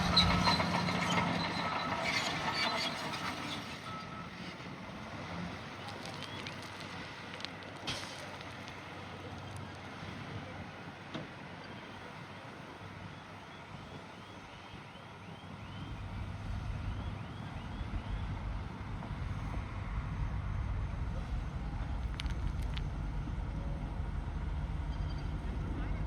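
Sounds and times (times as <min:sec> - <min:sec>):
diesel engine rumbling: 0:00.0 - 0:26.0.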